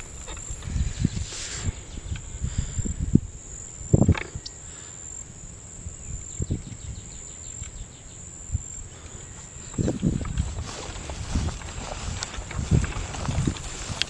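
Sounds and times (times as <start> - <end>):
insects shrilling: 0.0 - 14.0
low thumps and rustles: 9.7 - 14.0.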